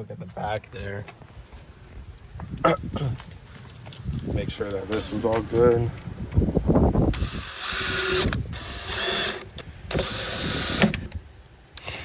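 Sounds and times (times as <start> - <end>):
power drill bursts: 7.1 - 11.2.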